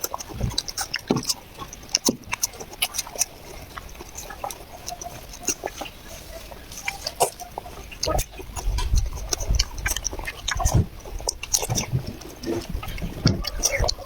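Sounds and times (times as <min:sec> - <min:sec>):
child chewing and lip-smacking: 0:00.0 - 0:14.0
dull low thumps: 0:07.9 - 0:14.0.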